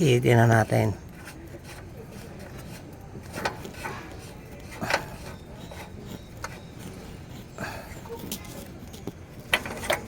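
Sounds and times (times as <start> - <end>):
tool knocking and scraping: 1.0 - 7.5, 8.2 - 10.0.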